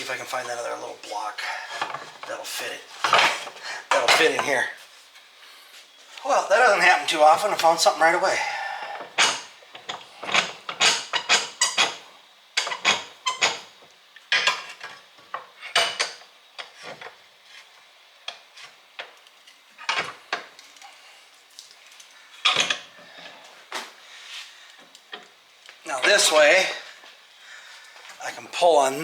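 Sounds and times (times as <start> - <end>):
metal tools clinking and clanking: 3.0 - 4.6.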